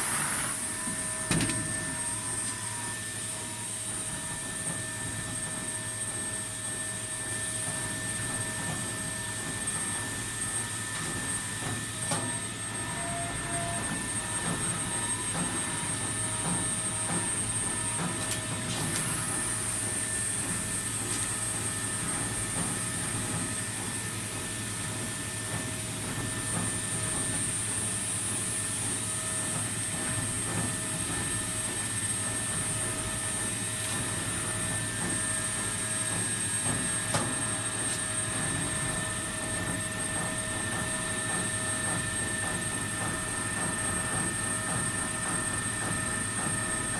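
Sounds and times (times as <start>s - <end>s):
mechanical hum: 0.0s - 46.9s
high-pitched spindle whine: 10.0s - 20.8s.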